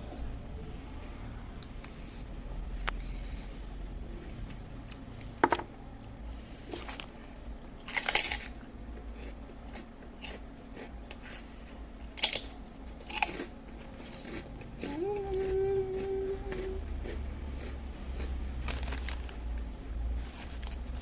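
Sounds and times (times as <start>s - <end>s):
person chewing and biting: 7.8s - 19.2s.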